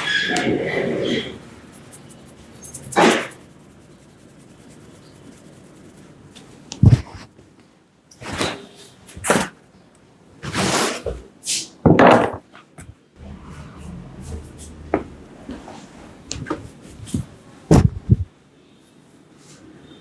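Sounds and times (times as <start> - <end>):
massage sounds from hands: 14.2 - 18.3.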